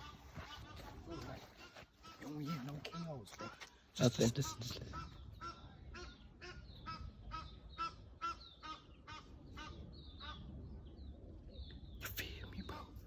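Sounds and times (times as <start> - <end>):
geese honking: 0.0 - 3.7, 4.4 - 10.5.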